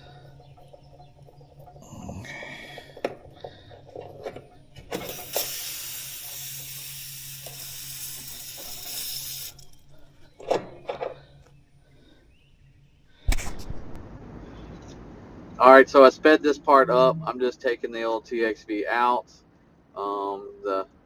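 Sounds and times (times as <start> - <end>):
gas hissing from valve: 4.9 - 9.9.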